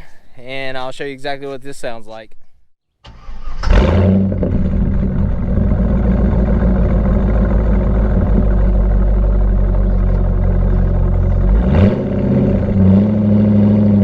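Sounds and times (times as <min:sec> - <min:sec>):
car engine starting and idling: 0:03.0 - 0:14.0.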